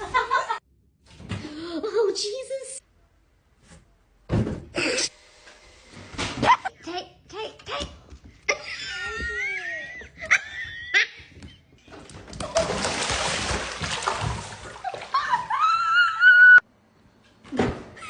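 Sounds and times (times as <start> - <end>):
water splashing and sloshing: 11.9 - 15.7.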